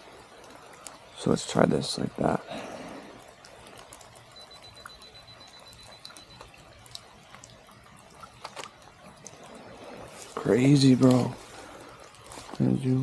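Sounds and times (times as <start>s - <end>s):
water dripping and trickling: 0.0s - 13.0s
camera self-timer beeping: 3.8s - 8.7s.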